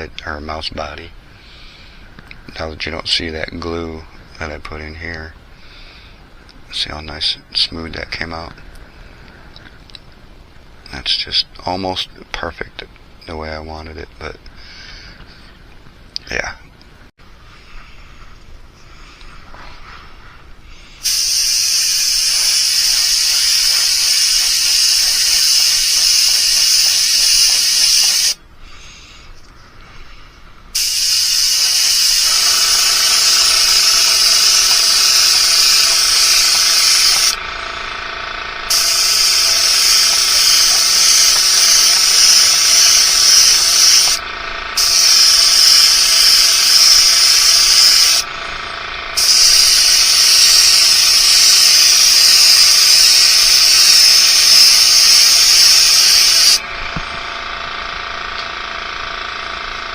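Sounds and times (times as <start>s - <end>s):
faint steady hum: 0.0s - 59.9s
spray paint hissing: 21.0s - 28.4s, 30.7s - 37.9s, 38.6s - 58.6s.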